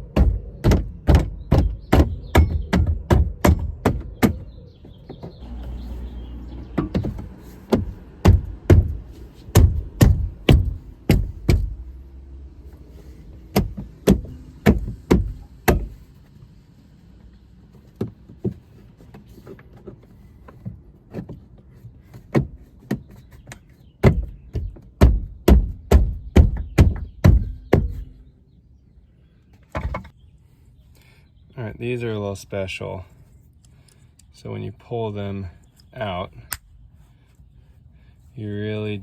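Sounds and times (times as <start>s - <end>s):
parts and hand tools knocking: 0.0s - 12.0s, 13.0s - 16.1s, 17.8s - 28.2s.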